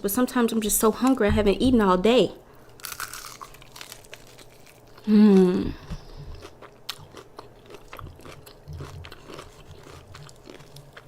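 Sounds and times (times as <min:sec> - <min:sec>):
crunching and chewing fried chicken: 0:02.7 - 0:05.1, 0:05.8 - 0:11.0
person humming mmm: 0:05.0 - 0:06.4.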